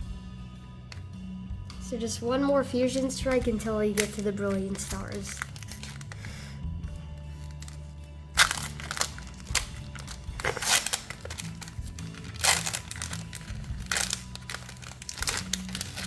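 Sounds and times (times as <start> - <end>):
soft background music: 0.0 - 16.0
foil wrapper crinkling: 3.2 - 6.5, 7.3 - 16.0.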